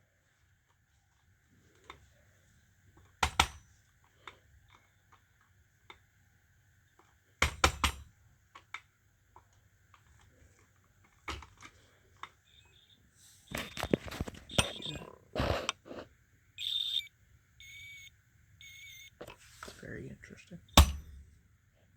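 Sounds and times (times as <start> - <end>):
plastic knocks and clacks: 13.5 - 15.0.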